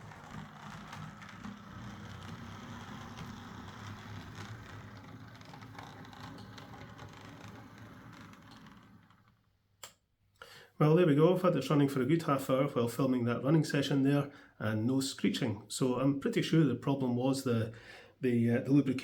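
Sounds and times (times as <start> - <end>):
model train motor hum: 0.0 - 9.2
wheels clicking on rails: 0.0 - 9.4.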